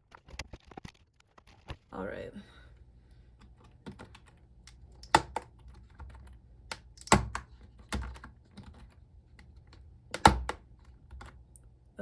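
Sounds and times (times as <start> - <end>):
typing on computer keyboard: 3.6 - 11.4.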